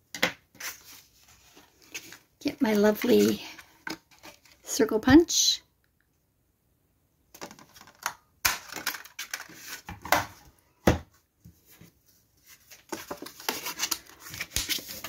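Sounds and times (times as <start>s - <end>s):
paper rustling: 11.7s - 15.0s.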